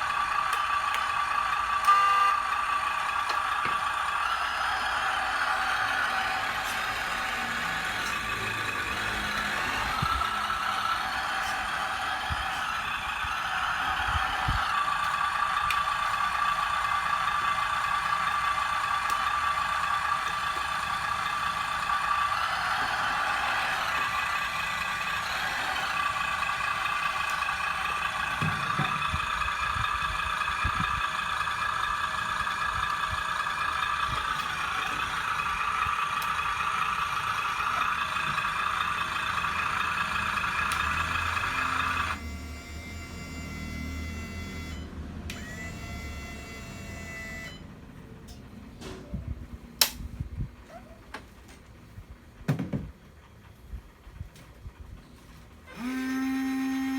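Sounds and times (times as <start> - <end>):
model truck motor whine: 0.0 - 50.2, 53.4 - 56.9.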